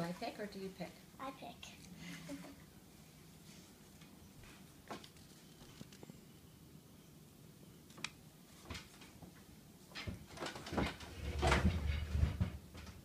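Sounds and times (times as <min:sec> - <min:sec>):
rustling: 0:01.8 - 0:06.2.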